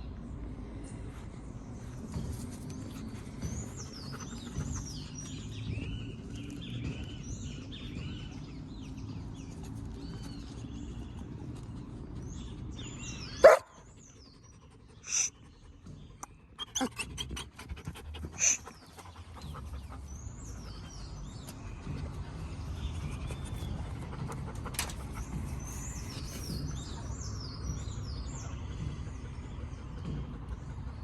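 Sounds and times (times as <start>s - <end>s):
steady low rumble: 0.0s - 16.4s, 17.4s - 31.0s
birds chirping: 0.9s - 31.0s.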